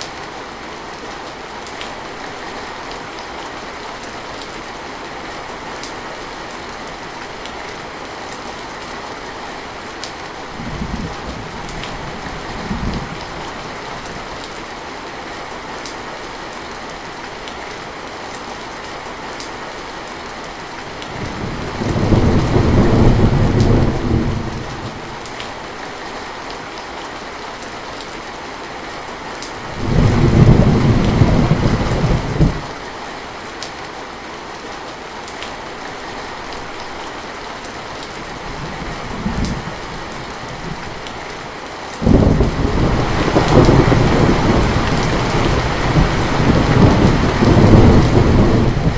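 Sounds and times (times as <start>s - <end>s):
heavy rain: 0.0s - 48.9s
thunder rumbling: 21.1s - 25.3s, 29.7s - 32.7s, 42.0s - 48.9s.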